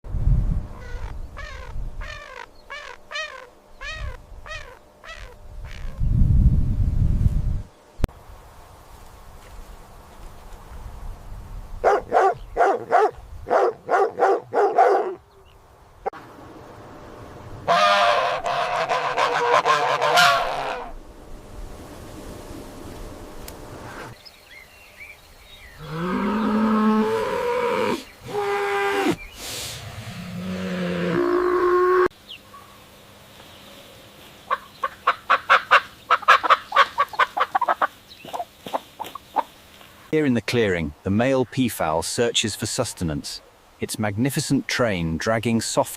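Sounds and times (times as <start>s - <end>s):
low drawn-out animal call: 0.8s - 6.0s, 17.7s - 21.0s, 25.8s - 32.1s
dog barking: 11.8s - 15.2s
fowl giving short sharp calls: 17.7s - 20.9s, 34.5s - 39.5s.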